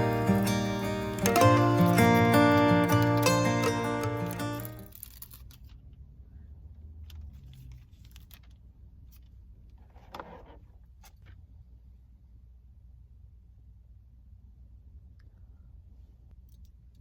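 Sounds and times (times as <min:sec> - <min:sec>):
scattered clicks: 0:00.0 - 0:05.7.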